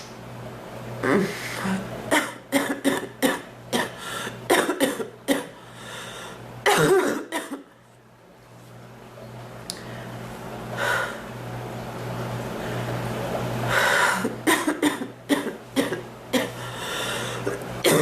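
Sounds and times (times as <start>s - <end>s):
woman coughing: 2.1s - 5.6s, 6.6s - 7.7s, 14.2s - 16.6s.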